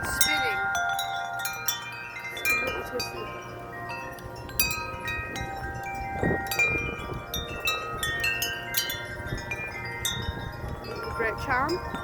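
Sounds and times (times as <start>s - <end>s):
wind chime ringing: 0.0s - 12.0s
wind noise: 4.0s - 12.0s.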